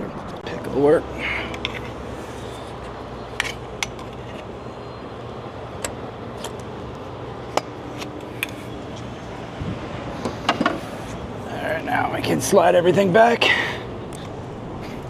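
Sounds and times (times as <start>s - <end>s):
steady low background hum: 0.0s - 15.0s
metal tools clinking: 0.4s - 4.5s.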